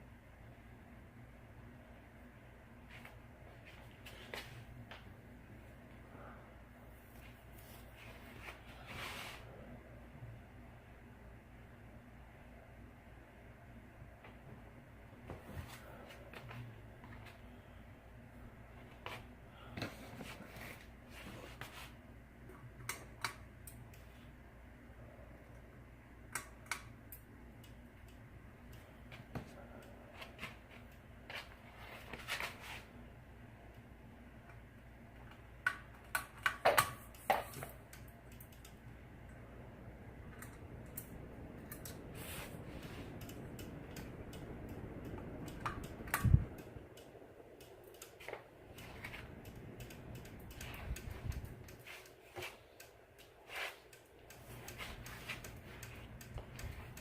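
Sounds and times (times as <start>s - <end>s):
ceiling fan motor hum: 0.0s - 57.0s
sharp clicks and ticks: 35.7s - 39.0s, 43.1s - 57.0s.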